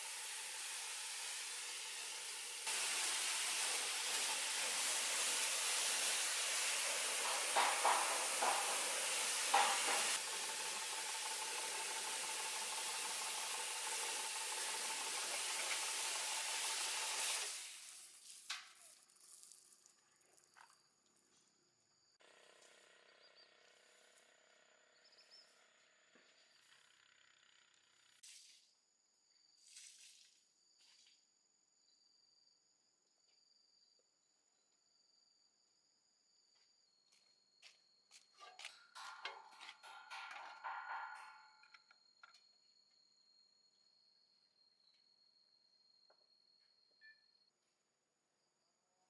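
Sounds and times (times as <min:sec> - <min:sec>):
spray jet hissing: 0:00.0 - 0:18.2.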